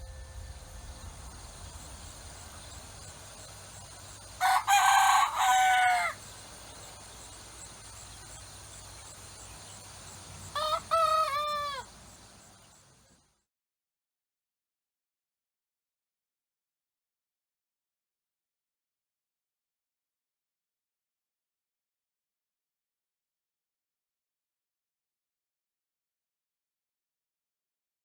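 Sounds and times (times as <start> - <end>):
faint steady hiss: 0.0 - 13.5
rooster crowing: 4.4 - 6.2, 10.5 - 11.9.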